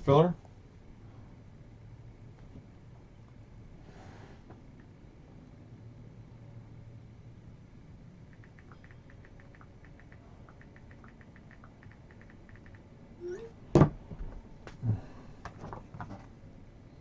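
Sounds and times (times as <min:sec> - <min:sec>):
sharp knocks and clicks: 0:08.3 - 0:12.9.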